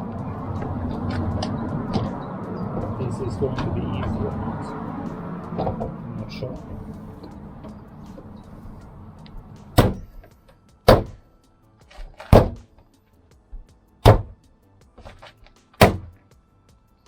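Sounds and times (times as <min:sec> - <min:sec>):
knocks on plastic door trim: 0:09.8 - 0:10.1, 0:10.9 - 0:11.2, 0:12.3 - 0:12.7, 0:14.1 - 0:14.4, 0:15.8 - 0:16.2.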